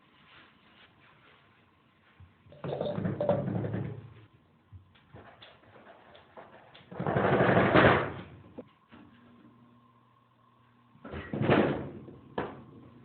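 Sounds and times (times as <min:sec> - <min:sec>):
door rattling and banging: 0:06.9 - 0:08.3, 0:11.2 - 0:12.1.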